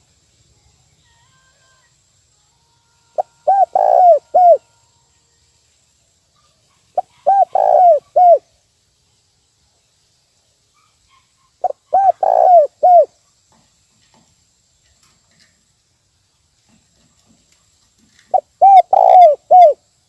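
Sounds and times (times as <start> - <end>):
dove cooing: 3.2 - 4.6, 7.0 - 8.4, 11.6 - 13.1, 18.3 - 19.8.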